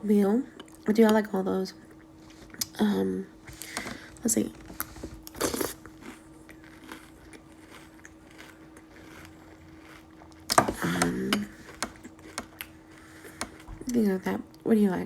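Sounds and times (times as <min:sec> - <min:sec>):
steady low hum: 0:00.0 - 0:15.0
chewing crunchy cereal: 0:03.6 - 0:14.6.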